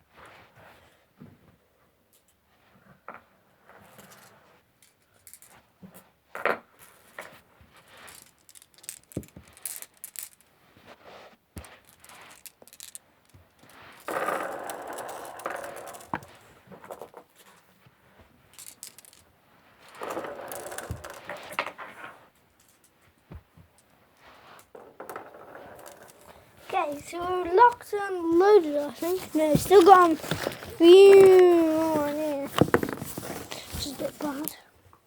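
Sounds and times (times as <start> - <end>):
marbles rattling and scraping: 4.9 - 5.5, 7.8 - 10.5, 11.6 - 17.6, 18.5 - 22.9, 23.8 - 34.6
glass marbles clicking: 8.1 - 10.4, 11.9 - 16.2, 18.6 - 19.2.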